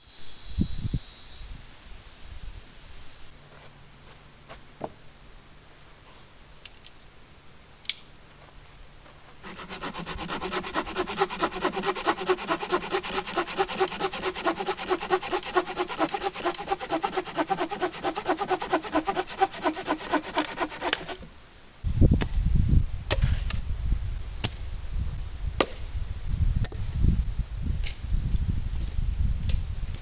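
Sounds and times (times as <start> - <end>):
hand saw cutting wood: 9.4 - 21.2.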